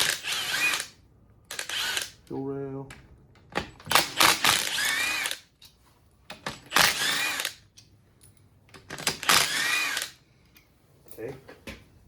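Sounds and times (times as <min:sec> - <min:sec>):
power drill whining: 0:00.0 - 0:02.2, 0:04.0 - 0:05.4, 0:06.7 - 0:07.6, 0:09.0 - 0:10.2
drill clicks: 0:01.5 - 0:02.2, 0:08.9 - 0:10.2.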